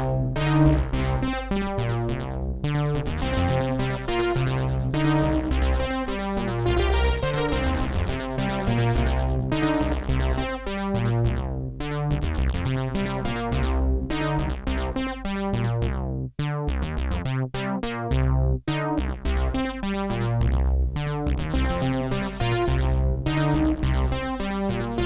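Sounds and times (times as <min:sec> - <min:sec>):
synthesizer notes with echo: 0:00.0 - 0:10.9.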